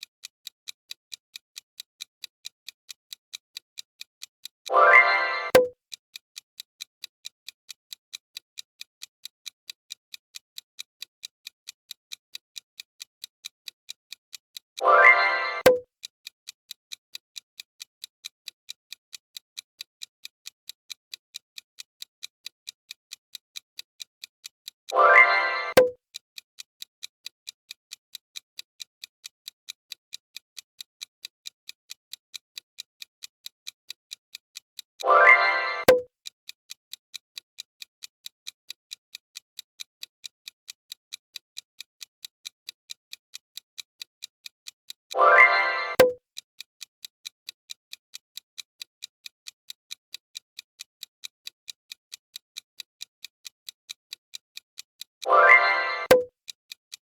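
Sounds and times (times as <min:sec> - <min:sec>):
clock ticking quickly: 0:00.0 - 0:05.8, 0:06.4 - 0:57.0
short musical sound effect: 0:04.7 - 0:05.6, 0:14.8 - 0:15.7, 0:25.0 - 0:25.8, 0:35.0 - 0:35.9, 0:45.2 - 0:46.0, 0:55.3 - 0:56.1.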